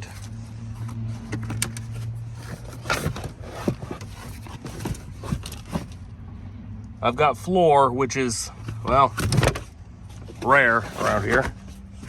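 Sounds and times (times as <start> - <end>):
light knocks clicks and scrapes: 0.0 - 6.0, 8.6 - 12.0.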